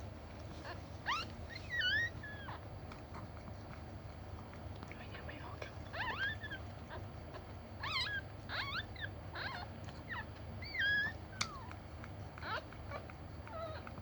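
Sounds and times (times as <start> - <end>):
dog whimpering: 0.5 - 3.3, 5.8 - 14.0.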